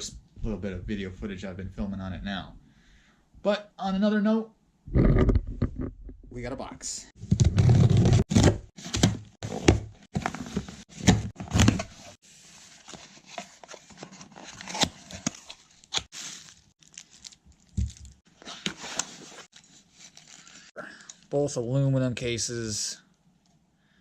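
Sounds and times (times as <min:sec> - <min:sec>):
rustling: 0:10.2 - 0:20.7
packaging tearing and crinkling: 0:13.8 - 0:20.7.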